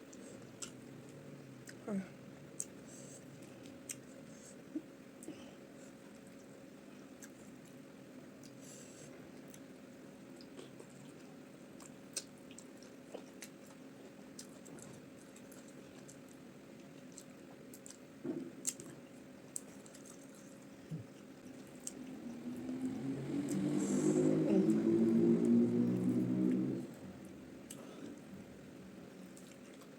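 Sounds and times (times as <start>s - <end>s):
faint steady hum: 0.0s - 29.9s
wet chewing and swallowing: 10.3s - 28.4s, 29.1s - 29.9s.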